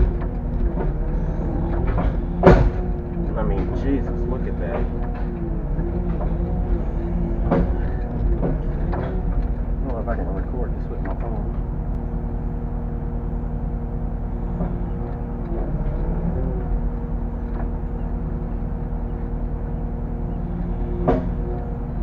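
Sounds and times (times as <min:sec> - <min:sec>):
light knocks: 0:00.0 - 0:12.0, 0:20.6 - 0:21.9
excavator diesel engine running: 0:00.0 - 0:22.0.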